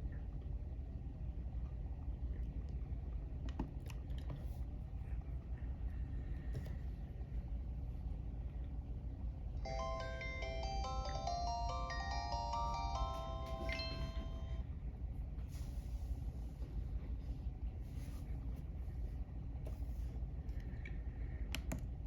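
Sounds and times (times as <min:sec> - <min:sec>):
low steady rumble: 0:00.0 - 0:22.0
cell phone polyphonic ringtone: 0:09.7 - 0:14.6.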